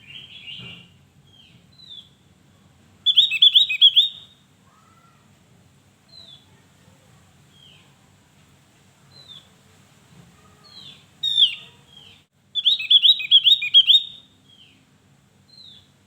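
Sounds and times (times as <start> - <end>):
bird singing high notes: 3.1 - 4.3, 10.8 - 11.6, 12.6 - 14.2
bird down-slurred call notes: 10.6 - 14.2.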